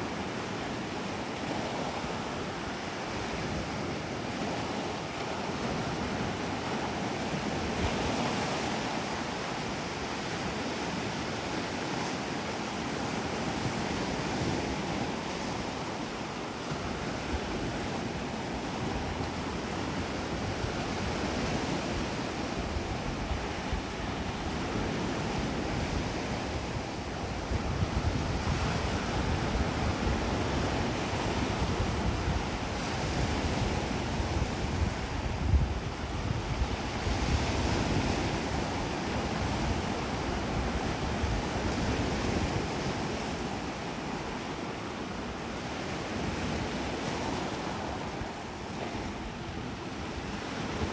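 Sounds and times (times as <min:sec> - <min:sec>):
wind buffeting microphone: 0:16.7 - 0:50.9.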